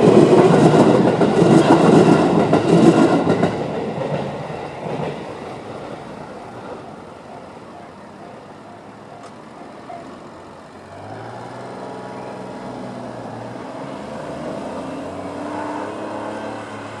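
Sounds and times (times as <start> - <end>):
vehicle engine approaching: 9.8 - 17.0.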